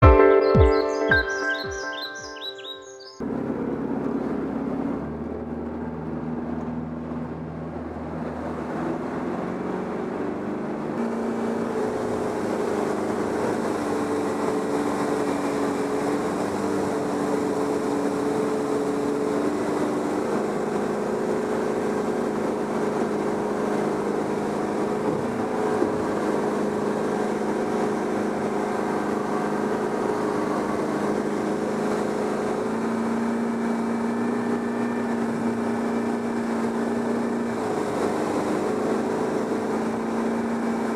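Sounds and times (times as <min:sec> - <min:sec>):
motorboat engine running: 0:11.1 - 0:40.9.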